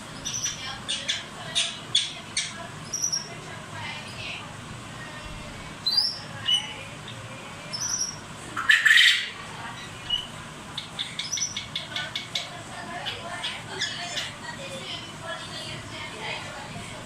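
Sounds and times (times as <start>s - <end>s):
bird chirps: 0.2s - 3.3s, 5.8s - 6.7s, 7.7s - 12.5s
bird squawk: 0.2s - 3.3s, 7.7s - 12.5s.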